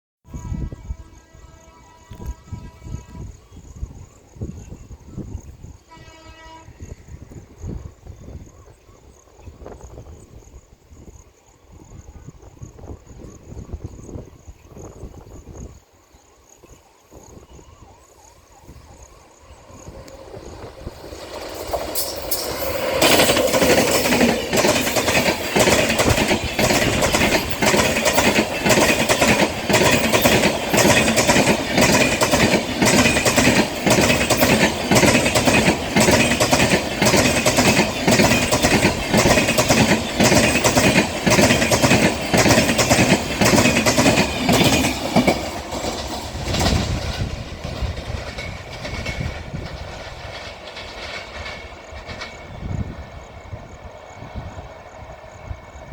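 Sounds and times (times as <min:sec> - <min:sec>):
train rushing past: 0:18.4 - 0:55.9
wheels clacking over rail joints: 0:19.0 - 0:53.3.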